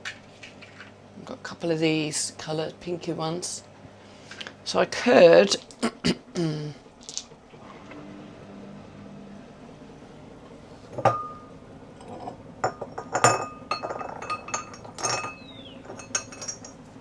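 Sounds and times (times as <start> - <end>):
stones clinking on ceramic dishes: 12.0 - 16.8.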